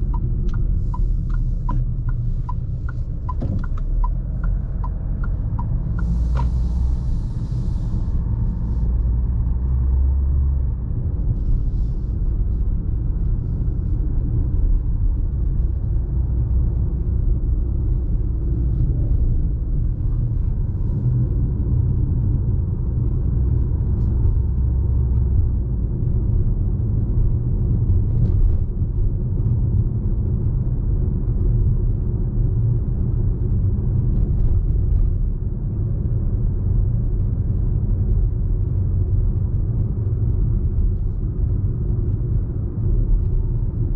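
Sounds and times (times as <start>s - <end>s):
diesel engine rumbling: 0.0s - 43.9s
road noise: 0.0s - 43.9s.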